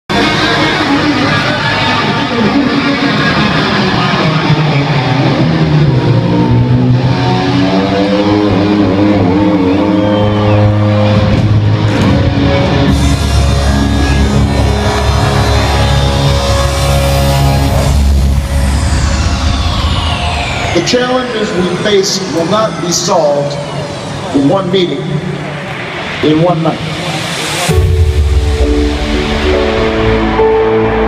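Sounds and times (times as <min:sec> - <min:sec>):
deep bass: 0:00.1 - 0:22.0, 0:26.8 - 0:31.0
electronic dance music: 0:00.1 - 0:31.0.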